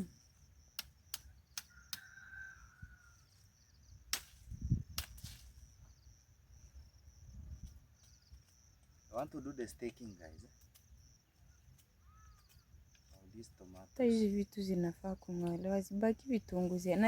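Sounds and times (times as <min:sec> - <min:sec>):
insects chirring: 0:00.0 - 0:17.0.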